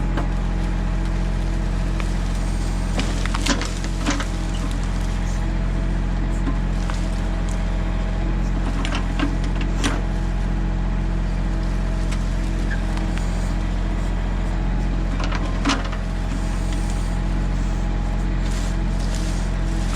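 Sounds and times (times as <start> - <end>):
tractor diesel engine running: 0.0 - 19.9
wood snapping: 2.8 - 5.2.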